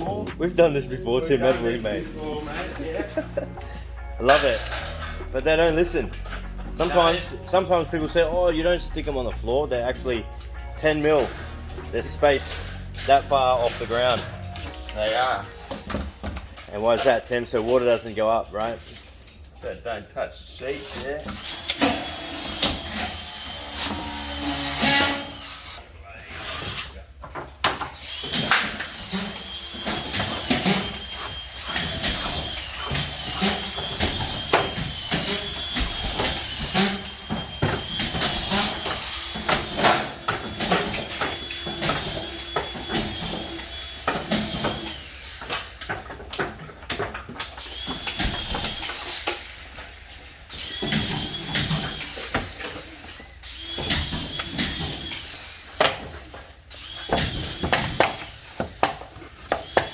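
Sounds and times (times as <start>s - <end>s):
screwgun whining: 21.0s - 25.8s, 27.9s - 46.4s, 47.3s - 59.9s
clatter of sheets and tools: 26.3s - 50.0s, 50.6s - 59.9s.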